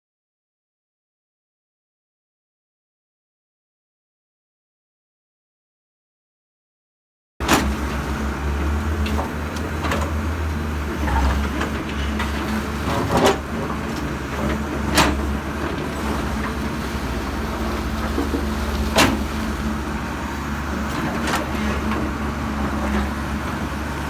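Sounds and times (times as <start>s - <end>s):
heavy machine engine humming: 7.4s - 24.0s.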